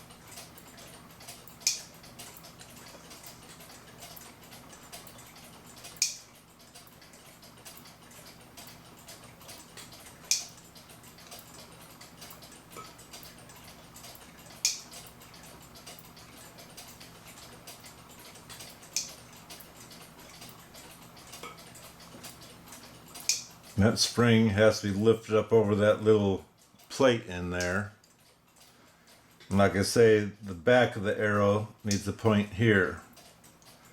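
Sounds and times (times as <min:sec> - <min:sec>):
clock ticking: 0:00.0 - 0:33.9
sharp click: 0:01.2 - 0:02.5, 0:05.8 - 0:06.9, 0:09.5 - 0:10.6, 0:14.0 - 0:15.1, 0:18.5 - 0:19.6, 0:23.2 - 0:23.6.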